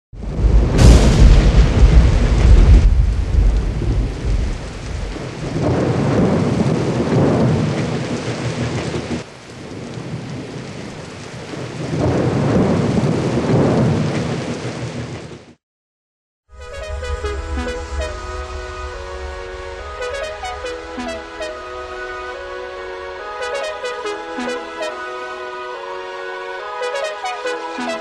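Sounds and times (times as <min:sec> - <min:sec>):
rolling thunder: 0:00.2 - 0:15.3, 0:16.8 - 0:22.4
steady rain: 0:00.2 - 0:15.6, 0:16.6 - 0:28.0.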